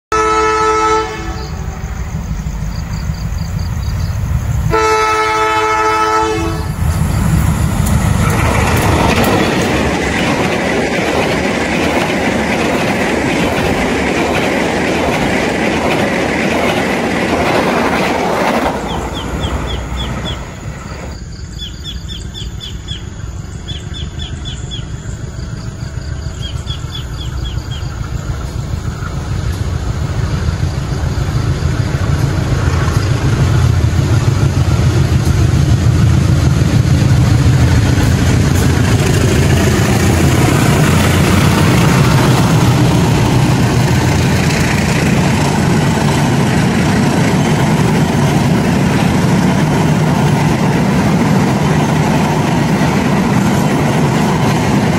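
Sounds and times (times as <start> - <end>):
diesel locomotive horn: 0.1 - 2.0, 4.7 - 6.9
train wheels rumbling on rails: 0.1 - 54.9.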